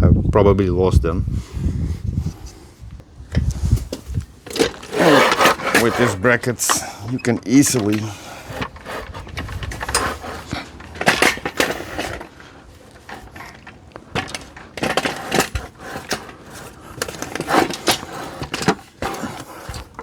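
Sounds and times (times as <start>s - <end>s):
mitre saw knocking and clanking: 4.4s - 20.0s.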